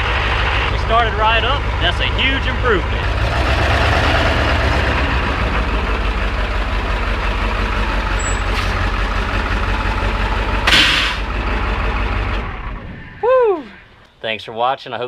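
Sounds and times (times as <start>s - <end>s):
diesel engine idling: 0.0s - 14.1s
short loud hiss: 8.2s - 8.8s, 10.7s - 11.3s.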